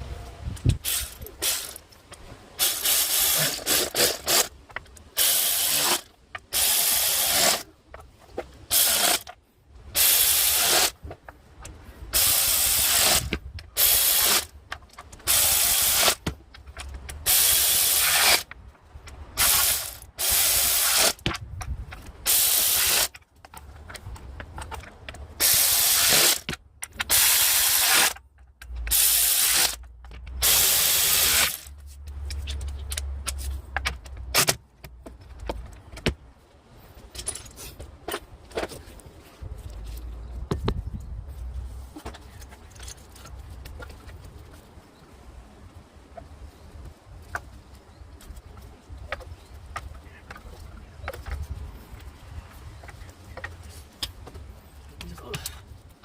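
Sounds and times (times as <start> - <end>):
ratchet wrench clicking: 0.8 - 1.8, 8.7 - 9.3, 10.0 - 11.0, 12.2 - 14.5, 15.2 - 16.2, 17.2 - 18.5, 19.4 - 21.2, 22.3 - 23.1, 25.4 - 29.8, 30.4 - 31.7.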